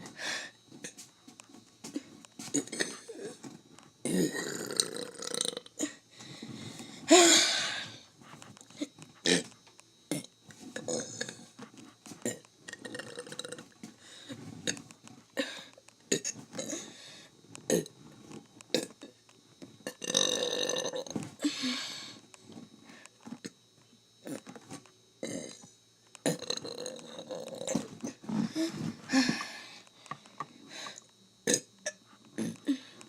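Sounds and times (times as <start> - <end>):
person burping: 2.5 - 3.4, 4.0 - 6.0, 8.8 - 9.5, 10.1 - 11.4, 18.7 - 19.2, 19.8 - 21.5, 25.2 - 29.4, 31.5 - 32.9.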